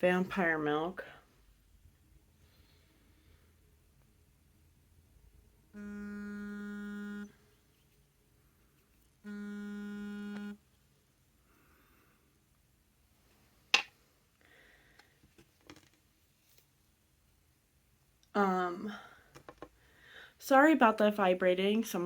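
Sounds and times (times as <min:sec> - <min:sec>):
phone vibrating: 0:05.7 - 0:07.5, 0:09.2 - 0:10.7.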